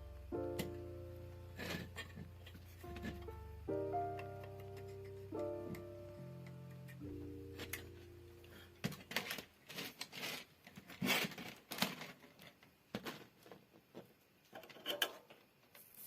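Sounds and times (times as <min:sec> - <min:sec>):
objects clicking and rustling: 0:08.8 - 0:15.9.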